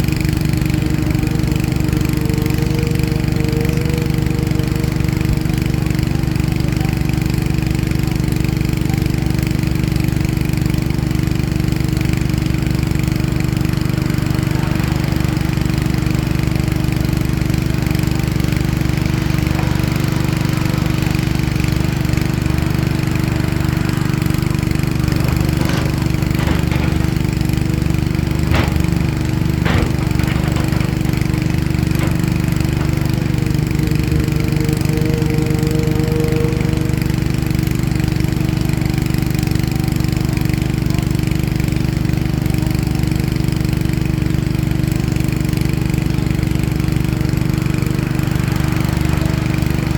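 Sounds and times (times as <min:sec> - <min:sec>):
diesel excavator engine running: 0:00.0 - 0:49.9
sharp knocks: 0:18.7 - 0:37.3.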